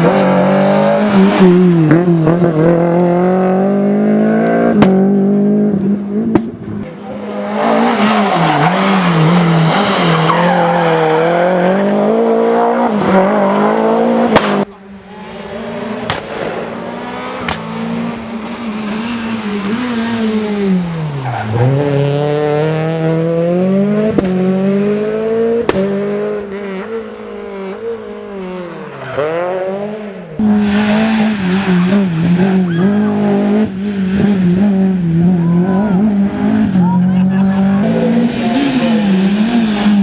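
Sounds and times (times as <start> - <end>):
rally car engine at high revs: 0.0 - 40.0
sharp cracks: 16.0 - 18.6.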